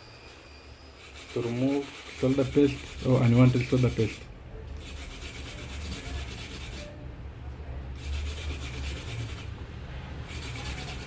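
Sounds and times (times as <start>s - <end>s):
brush scrubbing circuit board: 1.0s - 4.2s, 4.8s - 6.9s, 8.0s - 9.5s, 10.2s - 11.0s.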